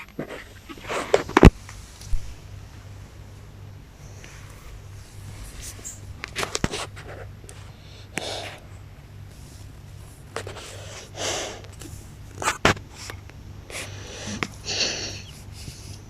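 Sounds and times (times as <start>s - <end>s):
dog snorting: 13.7s - 16.0s.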